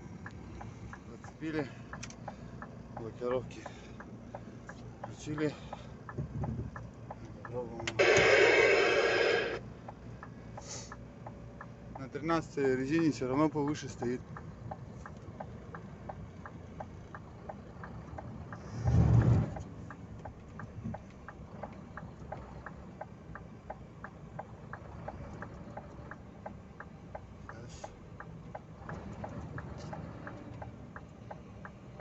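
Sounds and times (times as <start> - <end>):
dump truck engine running: 0.0 - 11.0, 13.8 - 32.0
steady even ticking: 0.2 - 18.6, 19.6 - 32.0
loud rush of sound: 8.0 - 9.6.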